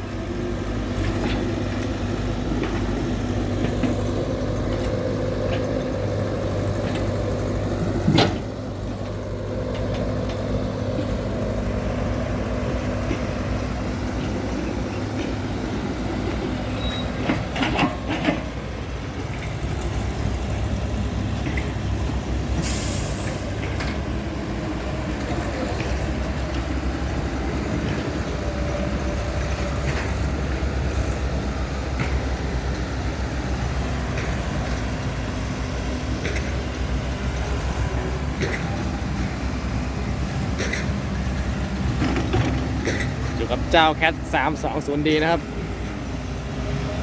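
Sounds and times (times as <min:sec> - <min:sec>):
truck diesel engine running: 0:00.0 - 0:47.0
air brakes hiss: 0:22.6 - 0:23.4.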